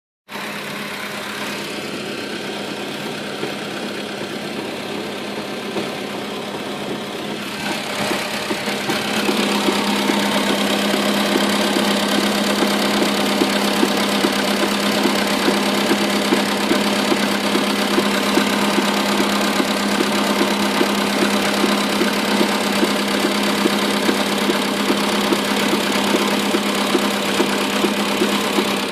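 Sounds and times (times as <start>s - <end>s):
car engine running: 0.3s - 28.9s
fast repeated knocking: 7.6s - 28.9s.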